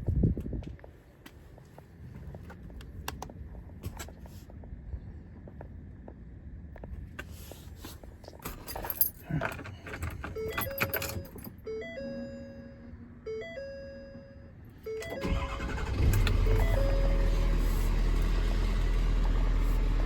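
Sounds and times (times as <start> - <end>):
keys jangling: 8.4 - 11.6
diesel engine starting and running: 8.5 - 20.0
electronic dashboard chime: 10.4 - 15.4, 16.4 - 17.6.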